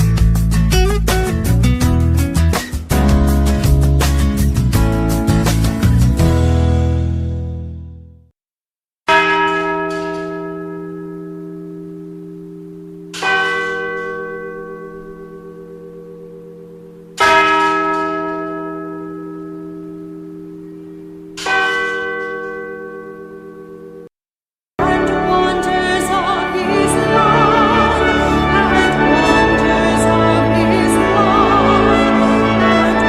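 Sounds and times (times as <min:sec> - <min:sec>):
large church bell tolling: 0:09.1 - 0:24.1.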